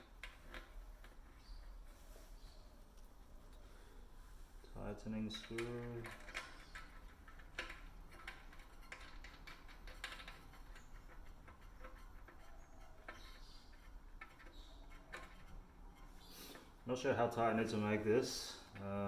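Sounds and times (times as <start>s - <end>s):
small clicks of nut being screwed: 5.3s - 16.7s.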